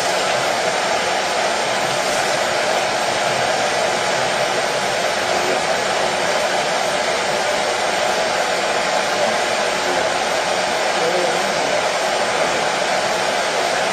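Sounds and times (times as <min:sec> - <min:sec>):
hair dryer running: 0:00.0 - 0:13.9.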